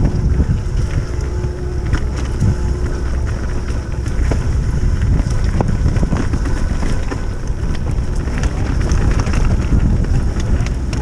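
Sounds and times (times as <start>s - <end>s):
wind buffeting microphone: 0.0s - 11.0s
bike clicks and knocks: 5.0s - 11.0s.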